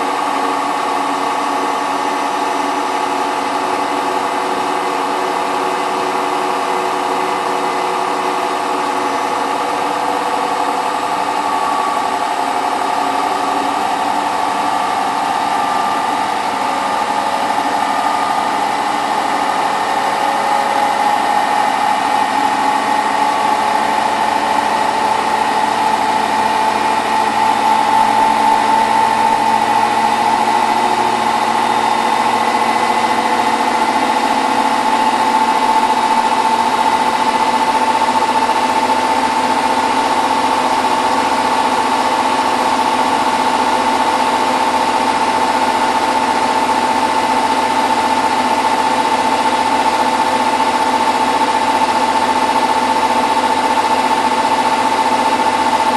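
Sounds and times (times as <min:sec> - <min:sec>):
washing machine spinning: 0:00.0 - 0:55.9.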